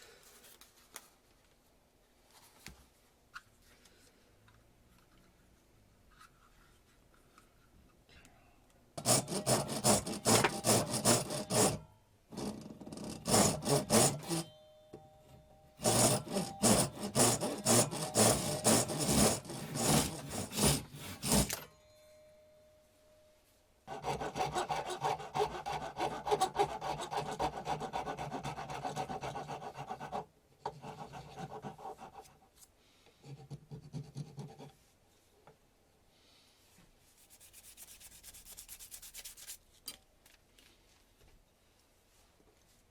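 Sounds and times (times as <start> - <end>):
hand tool rasping strokes: 9.0 - 14.5, 15.8 - 21.7, 23.9 - 30.2.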